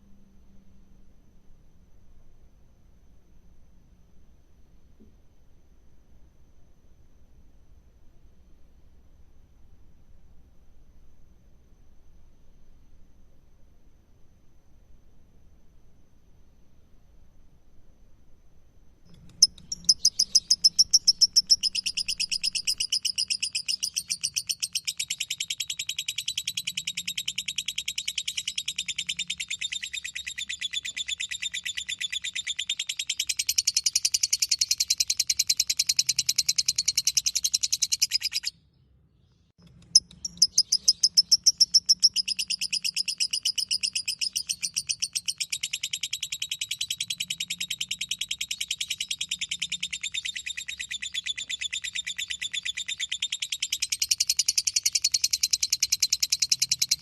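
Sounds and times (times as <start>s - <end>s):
bird chattering trill: 19.2s - 38.5s, 39.7s - 57.0s.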